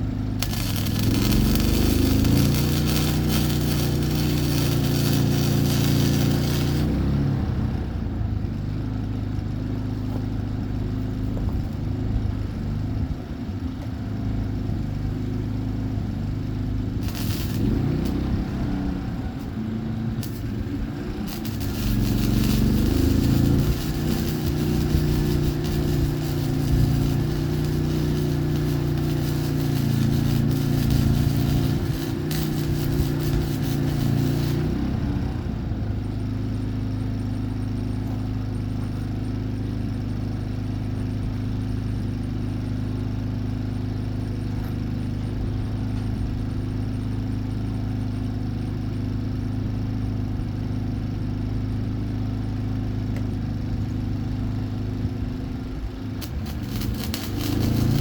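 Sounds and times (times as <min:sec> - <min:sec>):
steady machine hum: 0:00.0 - 0:07.2, 0:16.8 - 0:35.4, 0:56.2 - 0:58.0
welder arc crackling: 0:00.4 - 0:07.0, 0:17.0 - 0:19.6, 0:20.2 - 0:35.0, 0:56.2 - 0:58.0.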